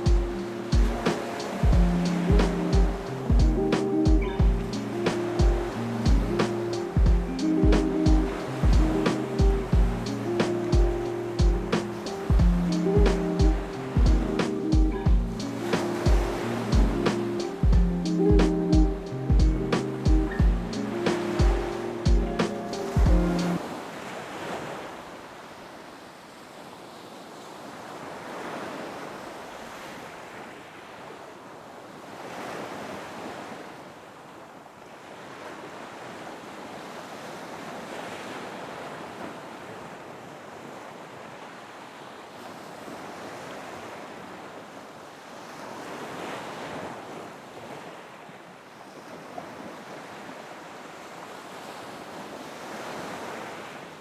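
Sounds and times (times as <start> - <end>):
ocean waves washing in: 0.0 - 34.2, 34.8 - 54.0
wind: 0.0 - 54.0.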